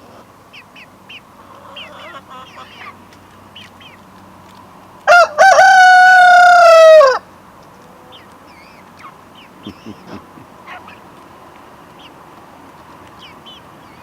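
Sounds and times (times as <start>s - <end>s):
chicks peeping: 0.0s - 4.7s, 5.5s - 14.0s
rooster crowing: 5.1s - 7.3s.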